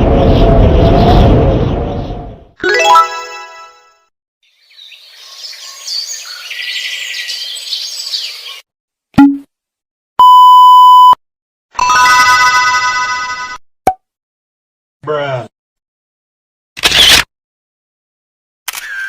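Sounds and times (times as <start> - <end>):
censor bleep: 9.2 - 9.5, 10.2 - 11.2.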